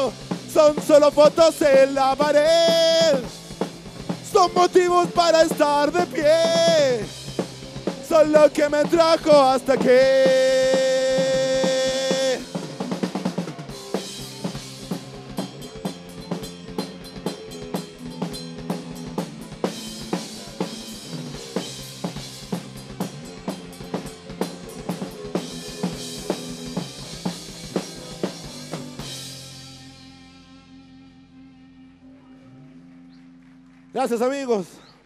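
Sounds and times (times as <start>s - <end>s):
kick and snare drum beat: 0.0s - 14.8s
rock band playing: 0.0s - 34.6s.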